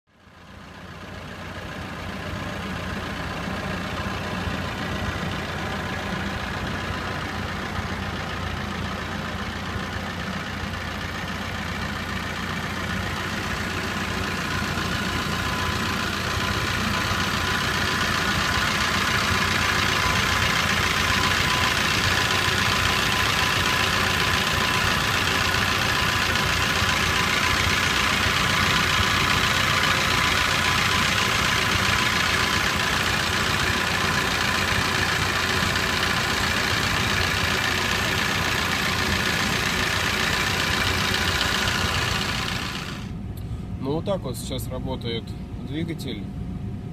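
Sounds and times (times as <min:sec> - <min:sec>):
car engine idling: 0:00.1 - 0:46.9
engine mechanical clatter: 0:00.2 - 0:45.5.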